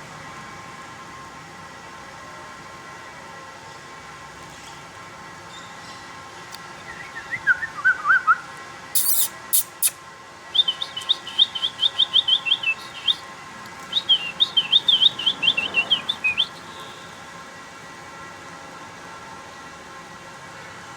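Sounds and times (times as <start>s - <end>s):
birds chirping: 9.0s - 17.3s.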